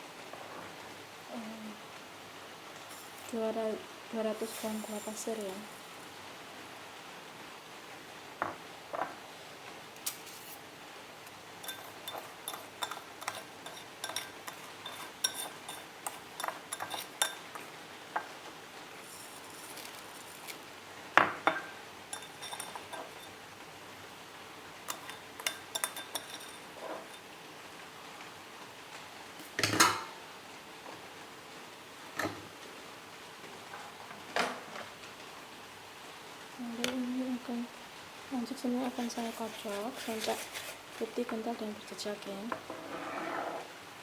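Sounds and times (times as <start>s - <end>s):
utensils and dishes clinking: 11.6s - 17.7s, 19.0s - 20.6s, 21.5s - 23.4s, 24.9s - 27.3s.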